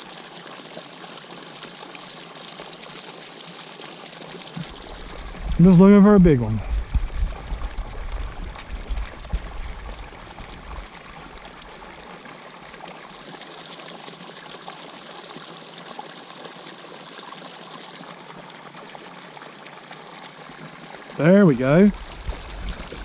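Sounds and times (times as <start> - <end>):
water running into pond: 0.0 - 23.0
low bumps and rumble: 4.6 - 10.8, 21.9 - 23.0.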